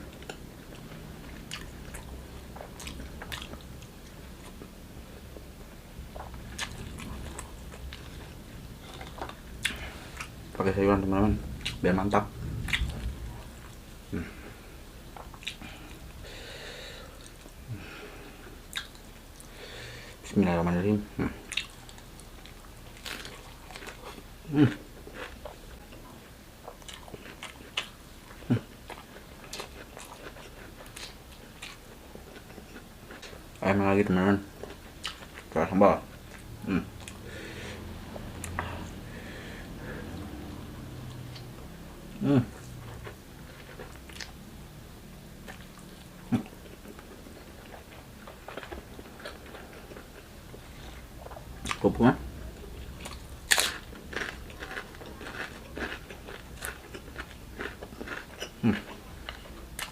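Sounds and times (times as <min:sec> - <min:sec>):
wet chewing with mouth clicks: 0:00.1 - 0:04.7, 0:06.1 - 0:10.7, 0:15.1 - 0:16.2, 0:18.7 - 0:19.5, 0:21.2 - 0:33.4, 0:34.6 - 0:35.6, 0:42.5 - 0:44.4, 0:45.4 - 0:51.9, 0:52.6 - 0:59.9
person chewing and biting: 0:05.4 - 0:10.4, 0:15.2 - 0:16.2, 0:45.4 - 0:51.9, 0:52.8 - 0:59.9.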